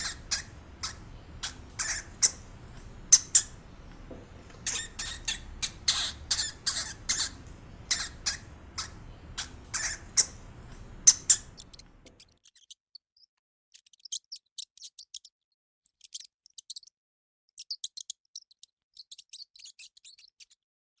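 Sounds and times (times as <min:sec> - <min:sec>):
hamster squeaking: 0:00.0 - 0:12.8.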